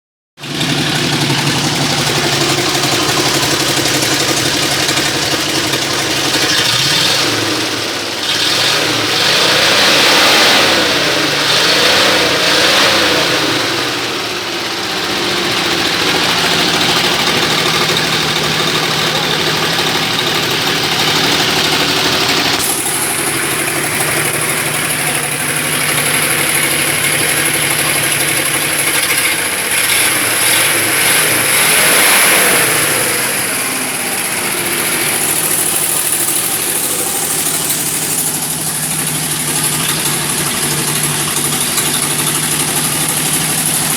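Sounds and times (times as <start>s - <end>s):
truck engine idling and revving: 0.4s - 43.9s.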